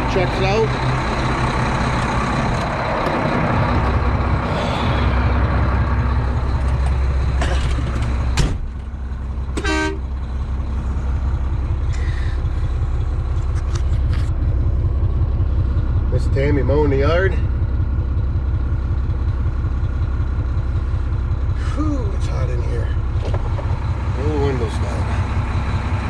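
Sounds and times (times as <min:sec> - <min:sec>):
diesel truck engine running: 0:00.0 - 0:26.0
short pitched toot: 0:09.6 - 0:10.1.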